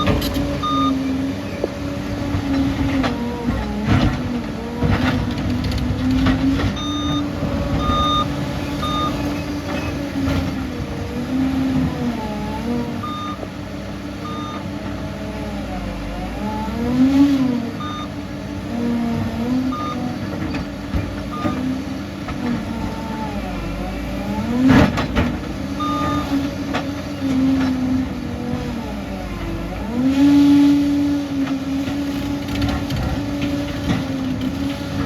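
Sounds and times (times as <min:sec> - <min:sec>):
reversing alarm beeping: 0:00.0 - 0:01.2, 0:06.7 - 0:10.0, 0:13.0 - 0:13.4, 0:14.2 - 0:14.7, 0:17.8 - 0:18.2, 0:19.7 - 0:20.5, 0:21.3 - 0:21.8, 0:25.8 - 0:26.5
bulldozer diesel engine working: 0:00.0 - 0:35.0.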